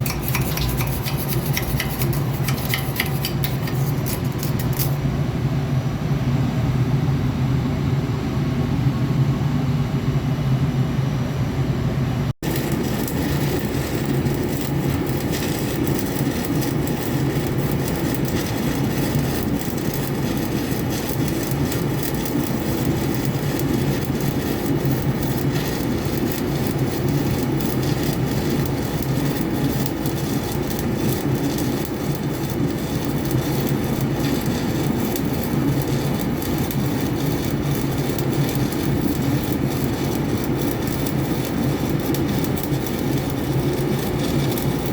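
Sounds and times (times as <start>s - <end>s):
welding arc crackling: 0.0s - 5.0s, 12.4s - 44.9s.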